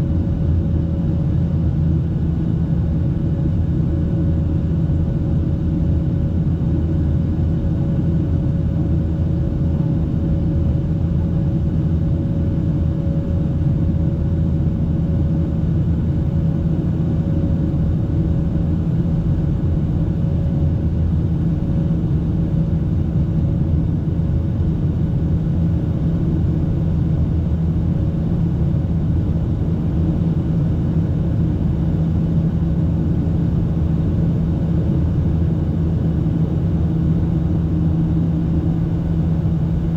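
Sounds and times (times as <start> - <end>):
faint steady hum: 0.0 - 39.9
jet engine deep rumble in cabin: 0.0 - 39.9.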